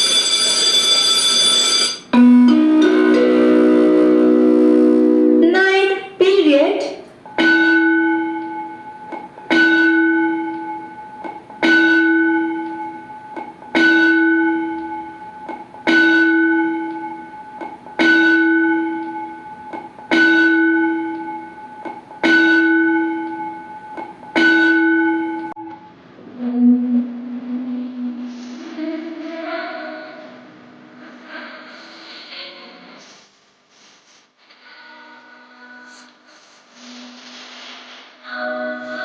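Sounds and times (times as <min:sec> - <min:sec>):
school bell ringing: 0:00.0 - 0:05.8, 0:15.9 - 0:25.5.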